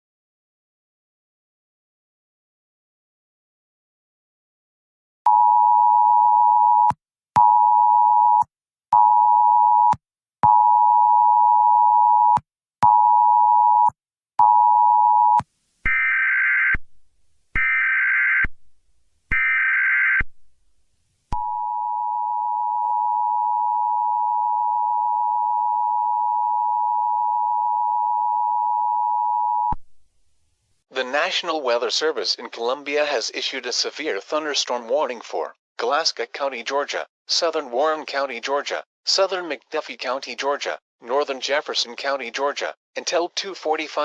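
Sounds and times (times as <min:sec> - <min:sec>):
data header squawks: 0:15.8 - 0:16.8.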